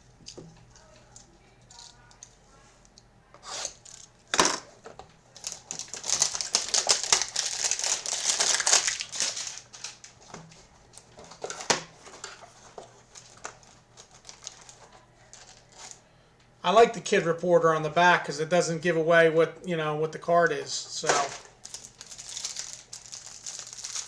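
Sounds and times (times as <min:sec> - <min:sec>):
plastic wrapping torn and crinkled: 0:05.3 - 0:10.3, 0:13.0 - 0:16.0, 0:21.0 - 0:24.0.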